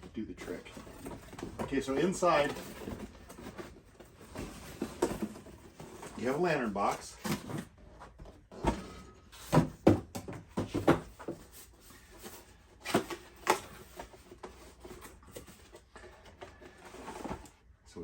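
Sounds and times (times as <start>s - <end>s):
cardboard packaging knocks and rustles: 0.8s - 6.2s, 7.2s - 15.7s.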